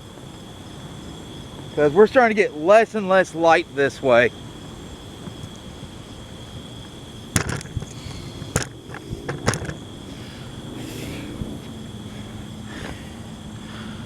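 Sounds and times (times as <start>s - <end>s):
night insects droning: 0.0s - 14.0s
light rattling: 7.3s - 10.4s
camera handling clunks: 7.4s - 7.9s, 8.5s - 9.8s.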